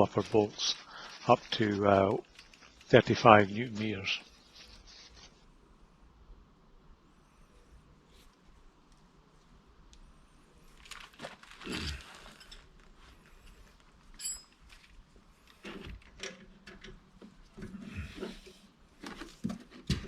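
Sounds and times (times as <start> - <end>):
short metallic ring: 14.2 - 14.6.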